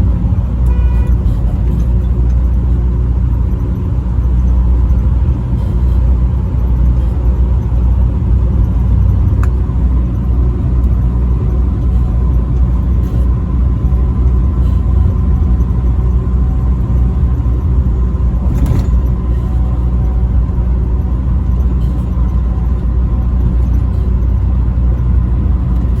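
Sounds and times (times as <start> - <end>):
truck diesel engine and road noise: 0.0 - 26.0.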